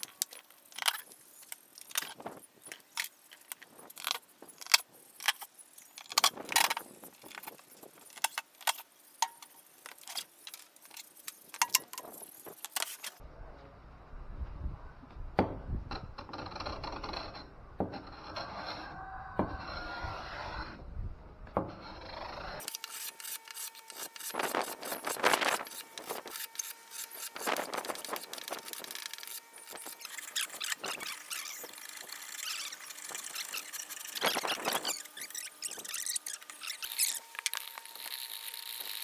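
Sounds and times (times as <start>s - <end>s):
wood scraping by hand: 16.2s - 20.8s.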